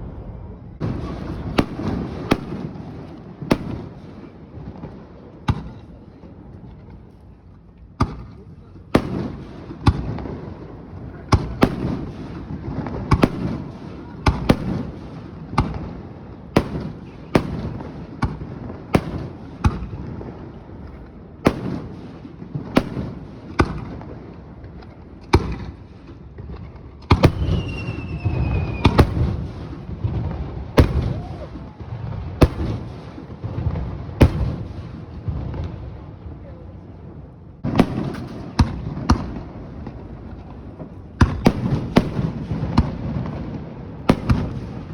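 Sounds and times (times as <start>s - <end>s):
fireworks bangs: 0.0s - 44.9s
low rumble of echoing booms: 26.4s - 44.9s
falling whistle: 27.4s - 29.0s.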